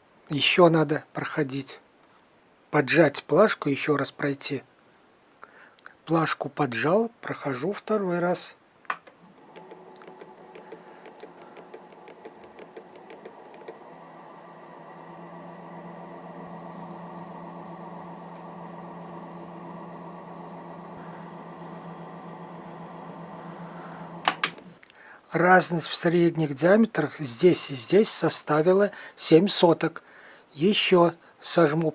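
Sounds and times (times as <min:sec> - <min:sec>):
small electric motor running: 0:09.2 - 0:24.8.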